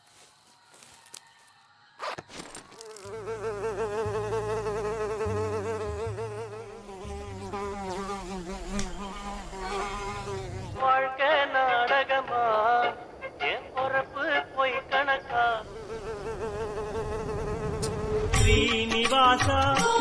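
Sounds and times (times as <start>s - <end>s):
flying insect buzzing: 2.4s - 10.8s, 15.5s - 18.6s.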